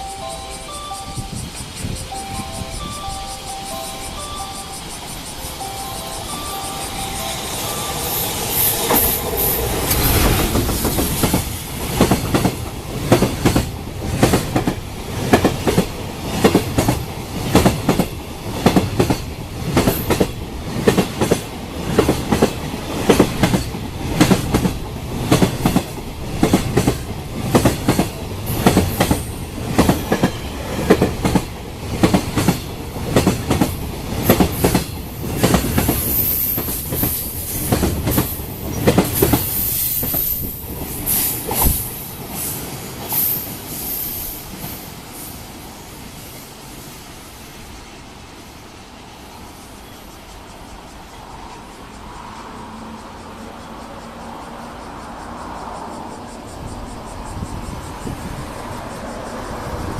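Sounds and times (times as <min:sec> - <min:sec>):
freight train wheels clattering: 0:00.0 - 0:45.5.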